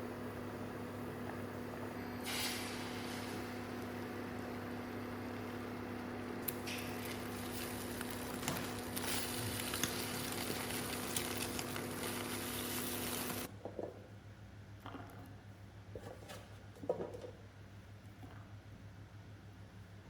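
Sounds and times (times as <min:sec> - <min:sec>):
steady mechanical hum: 0:00.0 - 0:20.0
food sizzling in a pan: 0:02.2 - 0:04.0, 0:06.5 - 0:13.5
crackles: 0:06.4 - 0:13.5.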